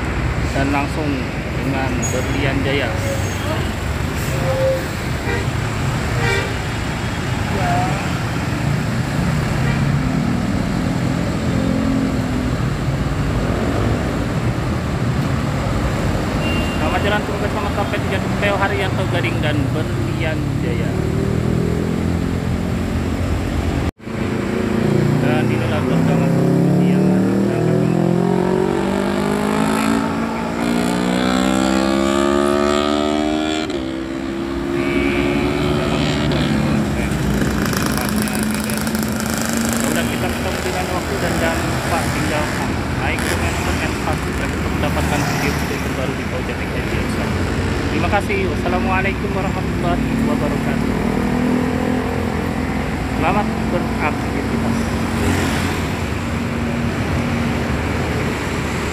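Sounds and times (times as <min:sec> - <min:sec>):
road traffic noise: 0:00.0 - 0:58.9.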